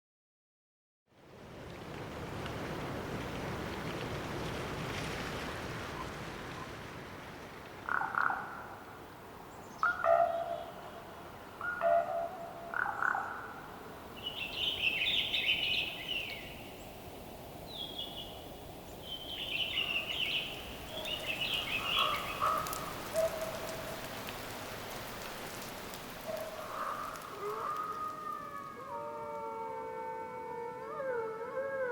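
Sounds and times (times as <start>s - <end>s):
ravens croaking: 19.6s - 29.3s.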